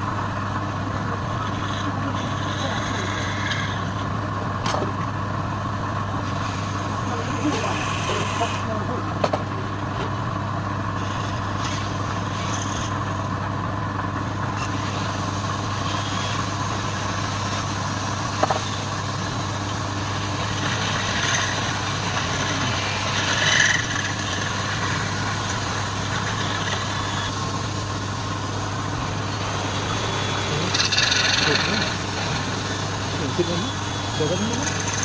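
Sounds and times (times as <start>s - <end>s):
wood lathe motor hum: 0.0s - 35.0s.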